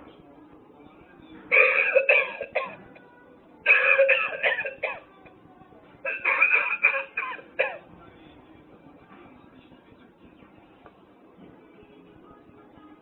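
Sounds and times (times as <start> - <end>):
recorded coughing: 1.5 - 3.0, 3.7 - 5.1, 6.1 - 7.9.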